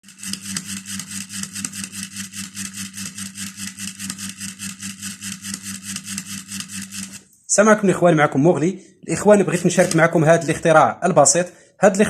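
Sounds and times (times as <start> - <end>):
alarm rapid pulsing buzz: 0.0 - 7.2.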